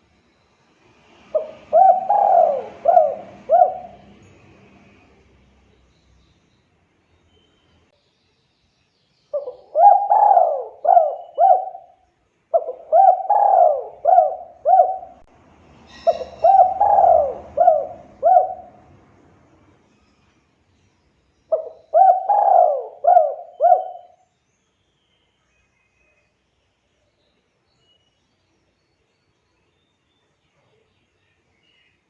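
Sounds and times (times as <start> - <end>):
dove cooing: 1.3 - 4.6, 9.4 - 15.3, 15.9 - 18.9, 21.5 - 24.2.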